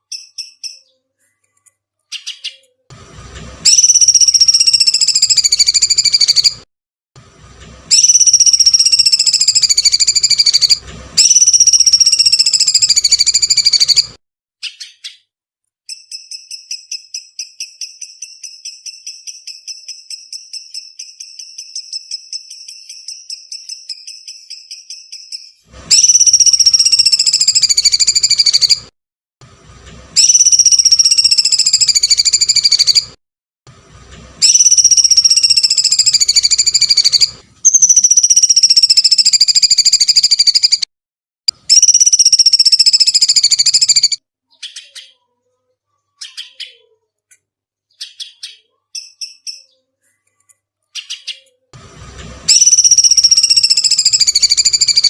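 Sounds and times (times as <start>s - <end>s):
shrill bird screeching: 2.1s - 2.7s, 3.6s - 6.6s, 7.9s - 15.2s, 15.9s - 28.9s, 30.2s - 33.2s, 34.4s - 40.9s, 41.7s - 45.2s, 46.2s - 46.8s, 48.0s - 49.8s, 51.0s - 51.5s, 52.5s - 55.0s
rapid rattling bird trill: 3.6s - 6.6s, 7.9s - 15.2s, 15.9s - 28.9s, 30.2s - 33.1s, 34.4s - 40.8s, 41.7s - 44.9s, 52.5s - 55.0s.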